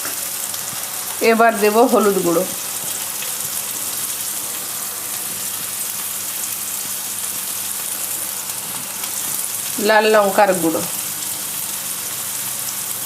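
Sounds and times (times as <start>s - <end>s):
vegetables sizzling in hot oil: 0.0s - 13.0s.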